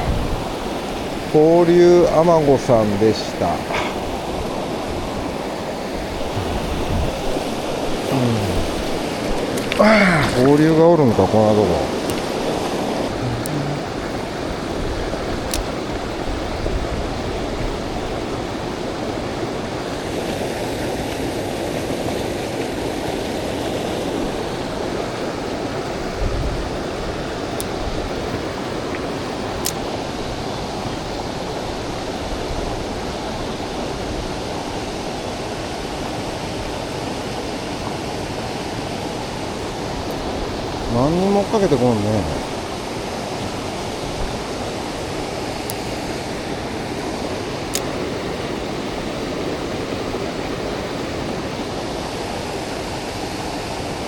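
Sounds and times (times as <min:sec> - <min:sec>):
mountain stream rushing: 0:00.0 - 0:54.0
faint sharp clicks: 0:15.5 - 0:15.7.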